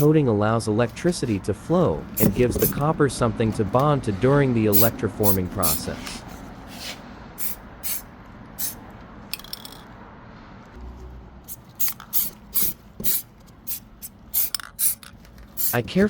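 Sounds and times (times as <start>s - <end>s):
spray can hissing bursts: 4.7s - 5.8s, 6.8s - 8.0s, 8.6s - 8.8s, 11.5s - 15.8s.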